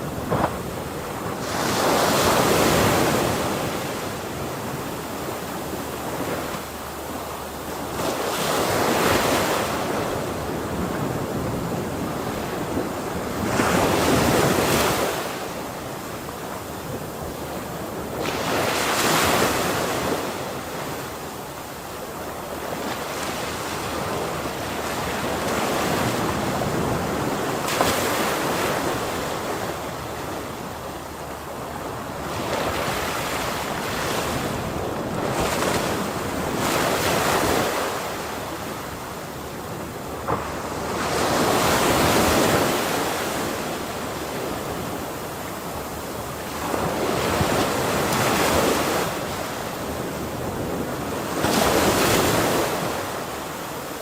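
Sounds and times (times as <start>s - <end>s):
ocean waves breaking: 0.0s - 21.0s
wind noise on microphone: 0.0s - 54.0s.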